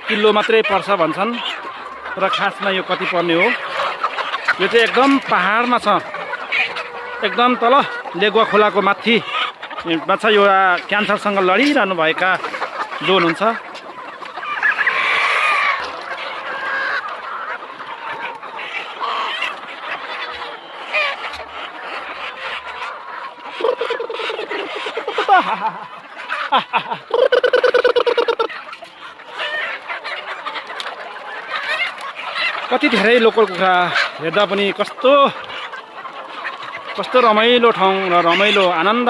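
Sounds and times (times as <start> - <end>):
chicken rapid rattling call: 0.0 - 39.0
chickens clucking: 0.0 - 39.0.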